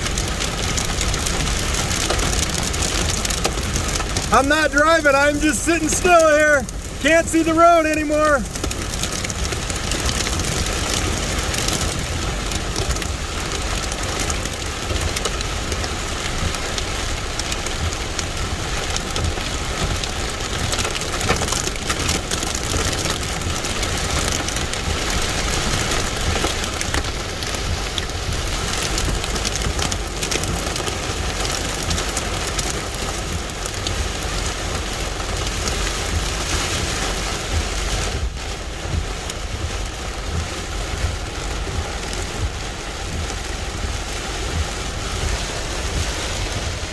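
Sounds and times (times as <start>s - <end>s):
hail and rain on car roof: 0.0s - 46.9s.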